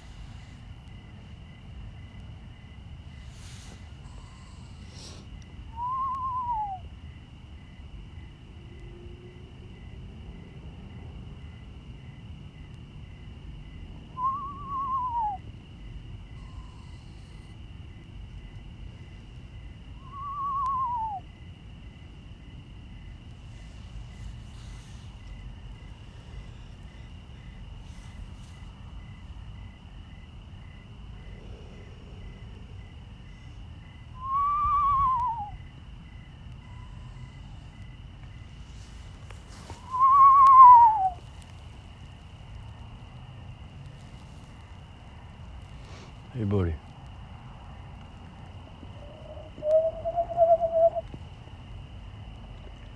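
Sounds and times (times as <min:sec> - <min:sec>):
owl raspy screech: 0:48.8 - 0:51.1.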